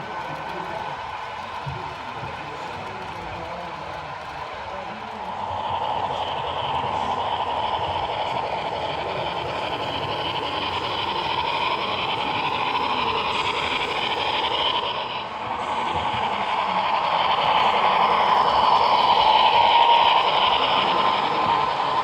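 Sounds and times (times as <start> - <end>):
steam hiss from small speaker: 5.2 - 22.0.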